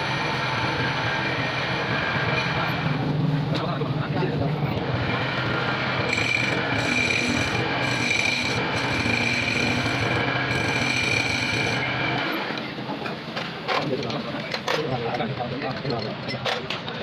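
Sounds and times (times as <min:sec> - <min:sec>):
lathe whine: 0:00.0 - 0:03.5, 0:04.7 - 0:12.6
metal scraping rasp: 0:06.0 - 0:11.9.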